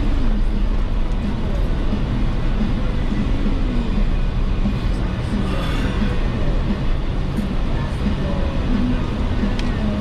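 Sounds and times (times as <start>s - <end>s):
vehicle engine rumble: 0.0s - 10.0s.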